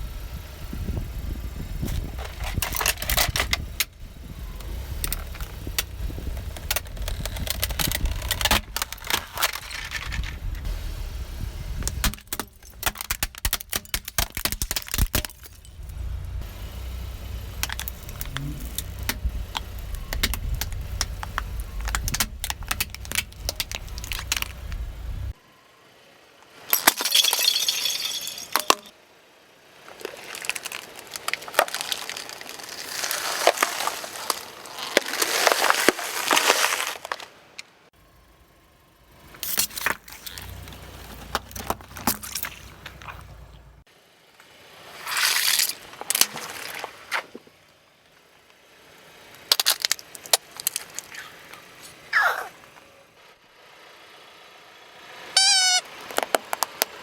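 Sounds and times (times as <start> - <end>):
car rumble: 0.0 - 25.7, 37.0 - 57.0
tyres crushing crunchy objects: 1.8 - 10.7, 11.8 - 16.2, 17.5 - 25.4, 29.8 - 37.6, 39.3 - 43.6, 49.4 - 51.9.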